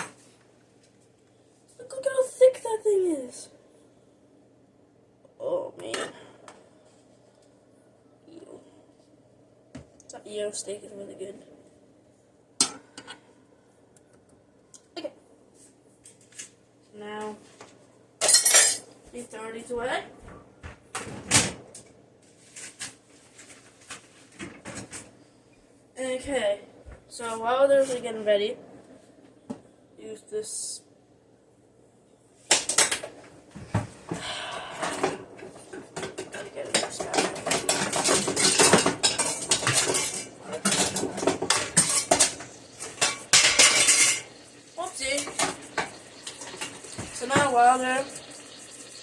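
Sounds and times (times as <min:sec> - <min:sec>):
utensils clattering on cookware: 0:18.2 - 0:18.8, 0:34.8 - 0:49.0
kitchen items knocking: 0:34.8 - 0:44.3.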